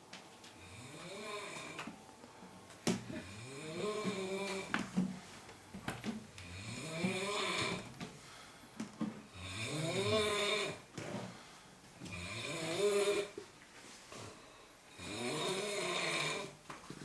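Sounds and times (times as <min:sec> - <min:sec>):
person snoring: 0:03.1 - 0:04.7, 0:06.5 - 0:07.9, 0:09.4 - 0:10.8, 0:12.1 - 0:13.4, 0:14.9 - 0:16.6.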